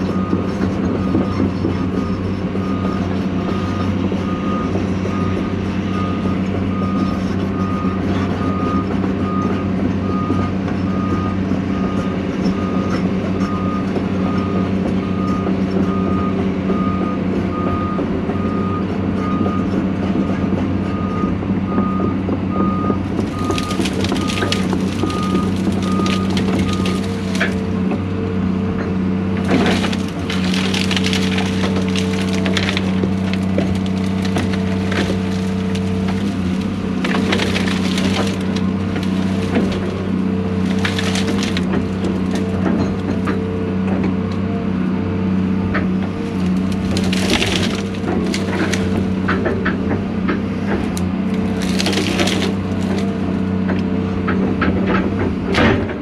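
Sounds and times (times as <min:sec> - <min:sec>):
diesel engine running: 0:00.0 - 0:56.0
wood cracking and splintering: 0:23.0 - 0:28.5, 0:29.2 - 0:44.1, 0:45.7 - 0:56.0.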